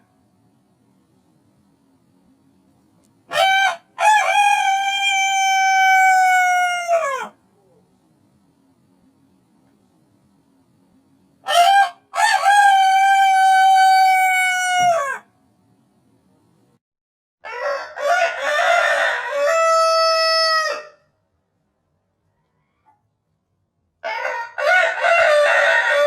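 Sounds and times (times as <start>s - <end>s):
rooster crowing: 3.3s - 7.4s, 11.5s - 15.3s, 17.4s - 21.0s, 24.0s - 26.0s.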